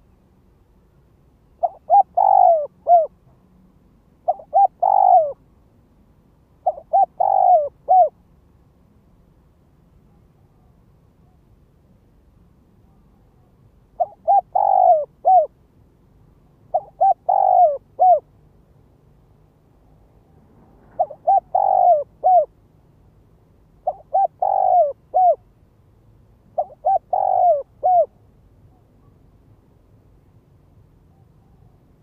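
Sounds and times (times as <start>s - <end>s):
dove cooing: 1.6s - 3.2s, 4.2s - 5.4s, 6.6s - 8.2s, 14.0s - 15.5s, 16.7s - 18.3s, 20.8s - 22.5s, 23.8s - 25.4s, 26.6s - 28.8s.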